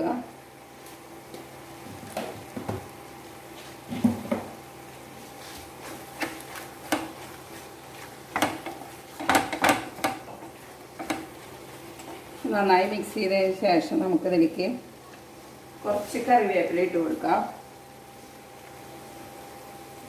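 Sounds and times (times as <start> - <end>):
spoon scraping and knocking a pan: 6.2 - 7.4, 8.0 - 12.2.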